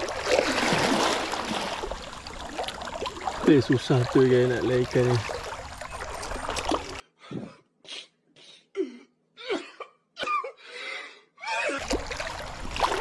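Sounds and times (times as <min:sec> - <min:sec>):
stream water rushing: 0:00.0 - 0:07.0, 0:11.8 - 0:13.0
person coughing: 0:08.8 - 0:10.7.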